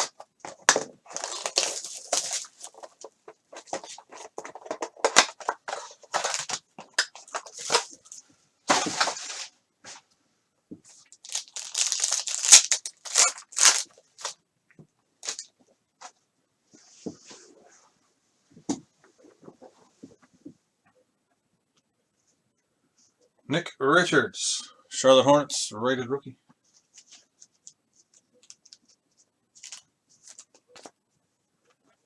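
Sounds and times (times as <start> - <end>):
plastic wrapping crinkling and tearing: 0.0 - 9.5, 11.0 - 14.4, 15.2 - 15.5, 29.6 - 30.9.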